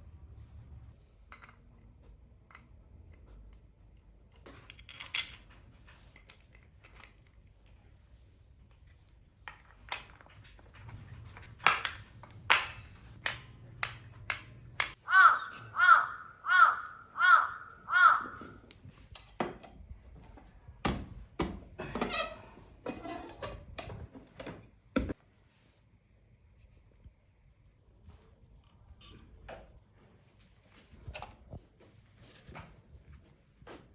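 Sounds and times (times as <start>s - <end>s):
crow cawing: 15.0s - 18.6s.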